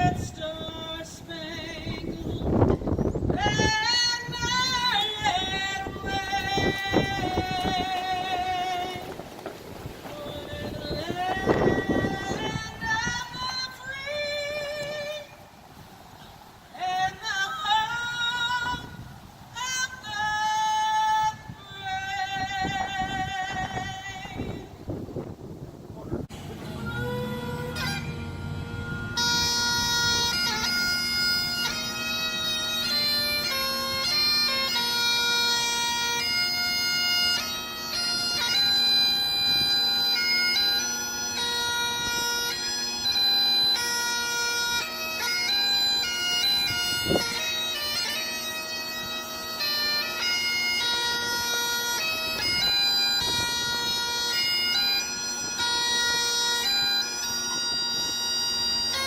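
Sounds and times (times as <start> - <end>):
bagpipes playing a melody: 0.0 - 15.4, 26.3 - 59.0.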